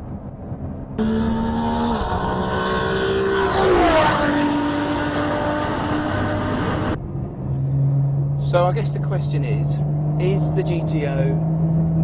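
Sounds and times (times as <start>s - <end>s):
sports car engine passing by: 0.7s - 7.0s.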